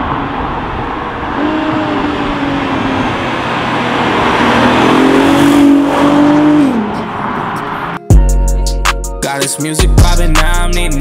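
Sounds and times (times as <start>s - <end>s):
car exhaust under throttle: 0.0s - 8.0s.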